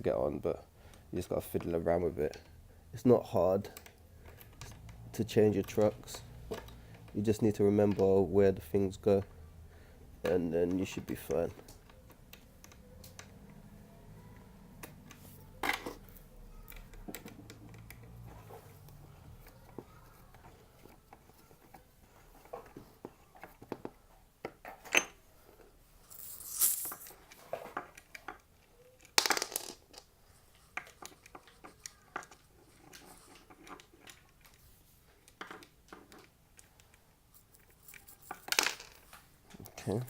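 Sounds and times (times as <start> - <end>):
small metal hardware clicking: 35.3 - 38.9.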